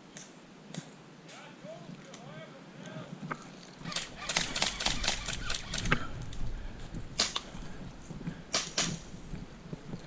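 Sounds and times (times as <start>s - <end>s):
airsoft guns firing: 3.8s - 5.9s.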